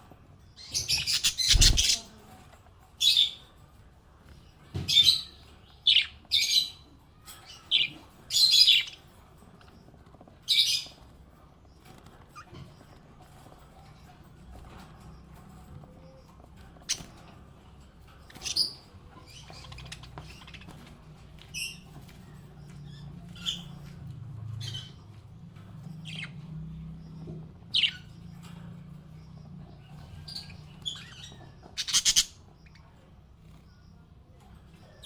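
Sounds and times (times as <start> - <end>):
parrots chirping: 0.6 - 2.1, 18.2 - 22.1, 22.7 - 24.0, 29.8 - 32.8.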